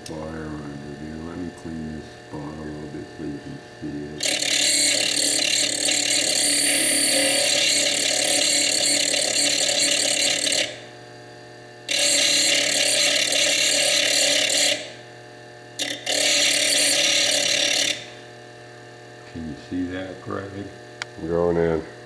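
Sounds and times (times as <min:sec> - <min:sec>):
faint steady hum: 0:00.0 - 0:22.0
lathe grinding stone: 0:02.2 - 0:10.9, 0:11.9 - 0:15.1, 0:15.8 - 0:18.2.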